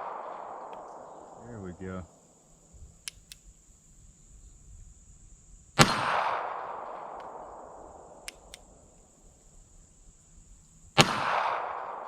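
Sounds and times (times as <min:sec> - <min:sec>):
pistol shot with echo: 0:00.0 - 0:02.2, 0:05.8 - 0:09.0, 0:11.0 - 0:12.0
faint clicks: 0:02.4 - 0:04.0, 0:08.2 - 0:10.9.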